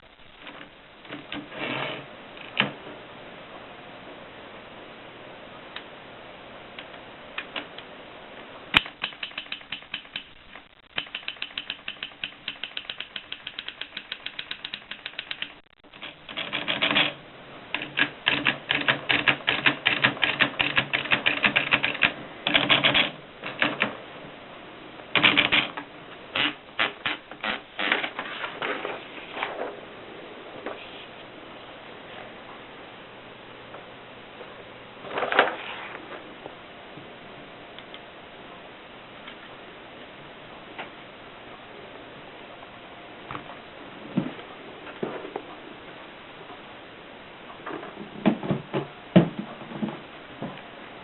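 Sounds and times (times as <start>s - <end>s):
typewriter keystrokes: 8.8s - 23.9s, 25.2s - 25.8s.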